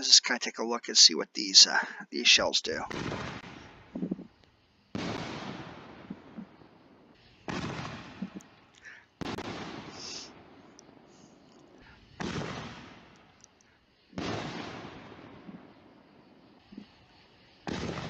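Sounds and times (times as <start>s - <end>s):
fireworks booming: 1.8s - 18.0s
faint firework pops: 2.9s - 15.8s, 17.6s - 18.0s.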